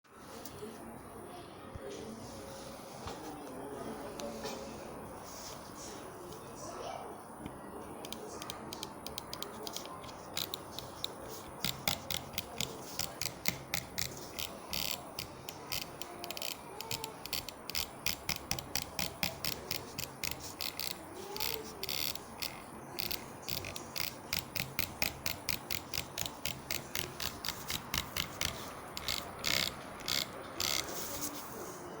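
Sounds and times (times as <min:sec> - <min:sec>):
rapid mouse button clicks: 0:07.5 - 0:31.4.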